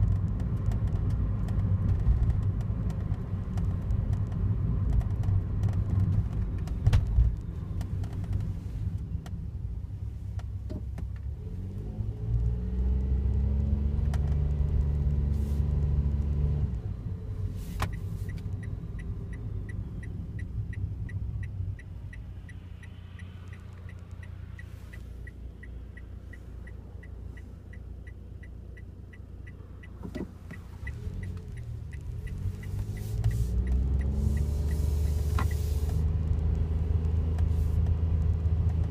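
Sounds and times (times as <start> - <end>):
car engine rumble: 0.0 - 38.9
light regular ticking: 10.2 - 38.9.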